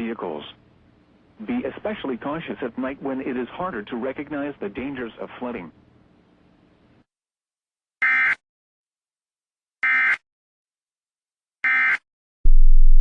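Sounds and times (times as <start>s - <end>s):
loud low buzz: 12.5s - 13.0s.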